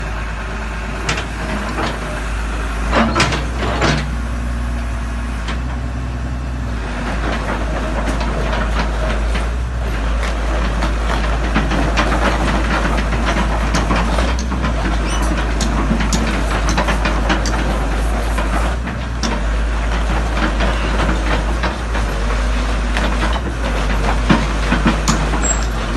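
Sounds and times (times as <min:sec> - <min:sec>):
excavator diesel engine running: 0:00.0 - 0:25.9
rattles and clicks: 0:07.0 - 0:25.9.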